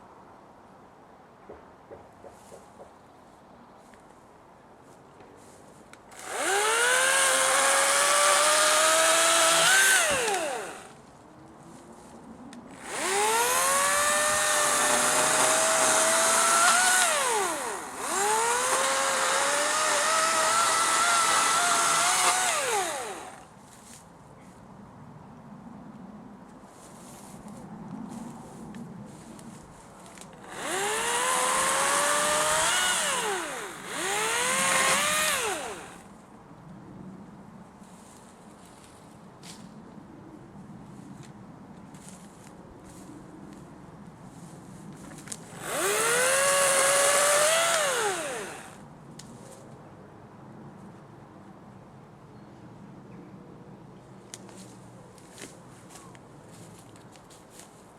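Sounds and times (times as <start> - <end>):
electric chainsaw whining: 6.1 - 11.0, 12.8 - 23.5, 30.4 - 36.1, 45.5 - 48.8.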